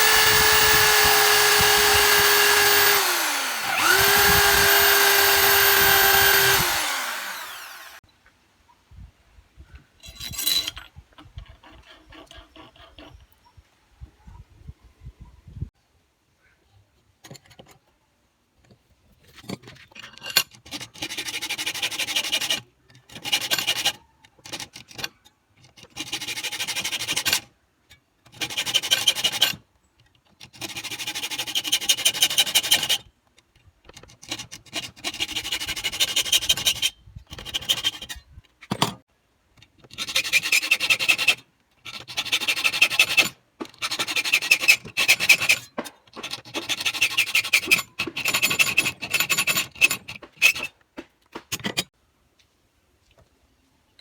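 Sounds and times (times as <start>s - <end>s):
harsh rasping on metal bar: 0.0s - 8.0s, 40.0s - 50.7s.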